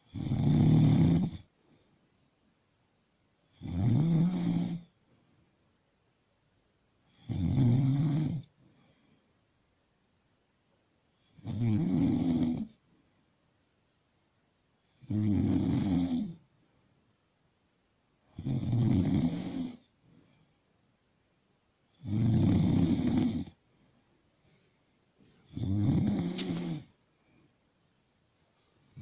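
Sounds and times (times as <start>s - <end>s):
rasping snores: 0.0s - 1.5s, 3.5s - 4.9s, 7.1s - 8.5s, 11.3s - 12.8s, 15.0s - 16.4s, 18.4s - 19.9s, 22.0s - 23.6s, 25.4s - 26.9s
sharp click: 26.3s - 26.7s.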